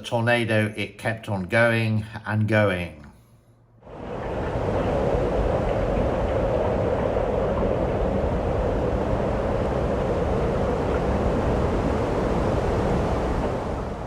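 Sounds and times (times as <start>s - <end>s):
strong wind rumbling: 3.8s - 14.0s.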